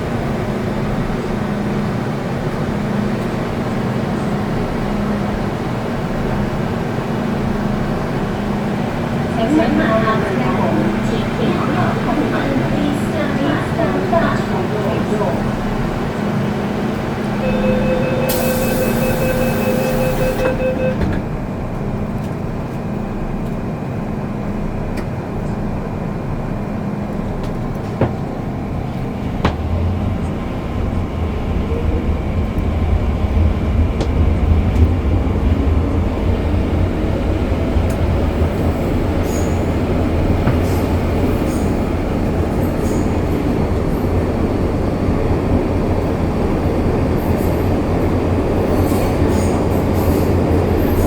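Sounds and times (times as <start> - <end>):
train rumble: 0.0 - 51.0
beeping tone: 17.4 - 21.1.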